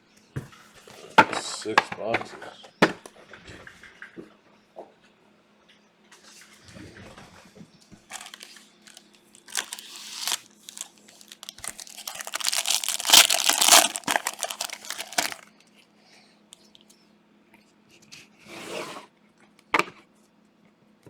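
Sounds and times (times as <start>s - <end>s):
plastic wrapping ripping: 8.1s - 15.4s
plastic crinkling: 8.1s - 15.5s.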